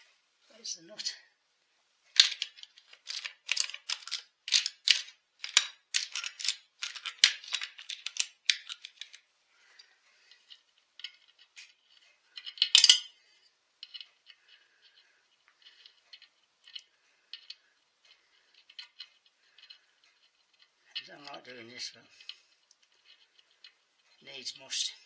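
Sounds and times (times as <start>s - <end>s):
metal tools clattering: 2.2s - 9.2s, 10.4s - 13.2s
metal parts and tools clinking: 2.2s - 13.2s, 13.8s - 25.0s.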